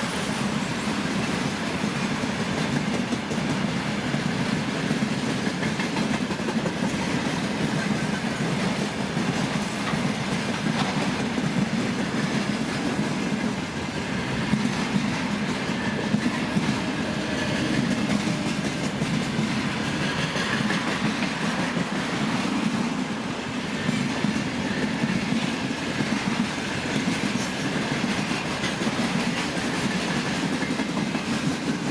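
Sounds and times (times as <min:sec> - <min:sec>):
train wheels rumbling on rails: 0:00.0 - 0:31.9.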